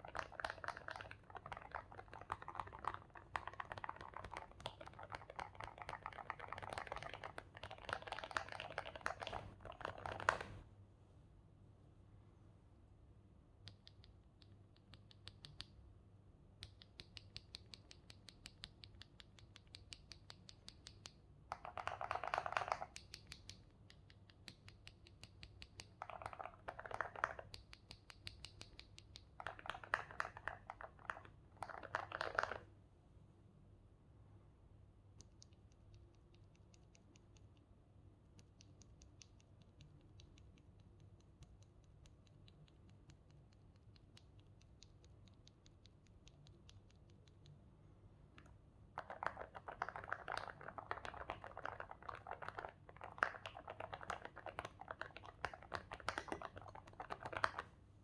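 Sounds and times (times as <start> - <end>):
mechanical keyboard typing: 0.0 - 10.5, 21.5 - 23.5, 49.0 - 57.6.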